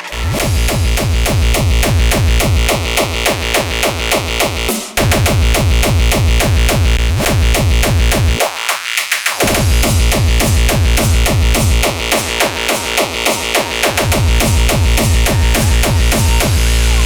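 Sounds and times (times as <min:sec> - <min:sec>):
electronic dance music beat: 0:00.0 - 0:17.0.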